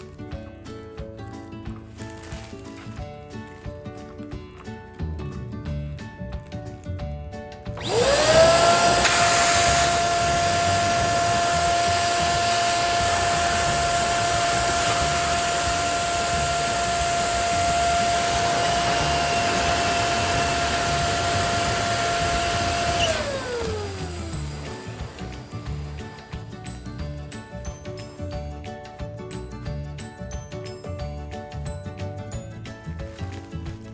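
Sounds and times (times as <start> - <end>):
balloon inflator motor whine: 7.8 - 26.7.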